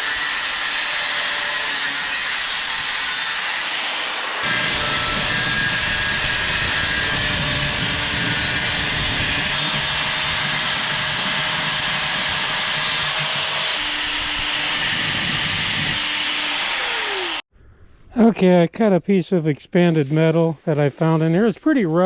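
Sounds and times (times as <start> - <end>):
power tool cutting metal: 0.0 - 17.4.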